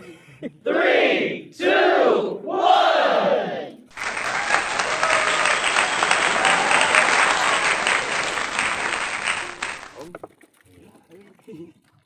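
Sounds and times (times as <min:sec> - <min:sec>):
faint voices: 0:03.9 - 0:10.1
crowd applause: 0:03.9 - 0:10.2.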